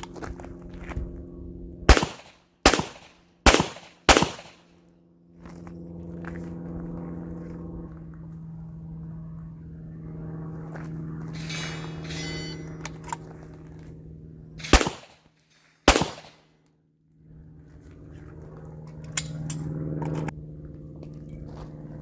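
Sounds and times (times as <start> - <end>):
steady low hum: 0.0 - 22.0
handgun shots: 1.9 - 4.6, 14.6 - 15.2, 15.9 - 16.4.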